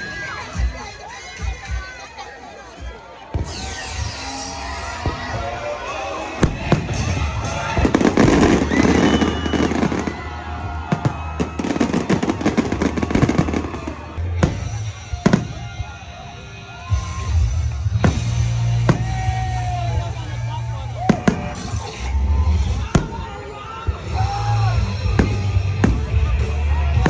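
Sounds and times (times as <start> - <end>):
music playing: 0.0 - 27.0
fireworks crackling: 3.4 - 27.0
fireworks bangs: 6.3 - 16.0, 17.9 - 20.1, 21.1 - 24.1, 24.8 - 27.0.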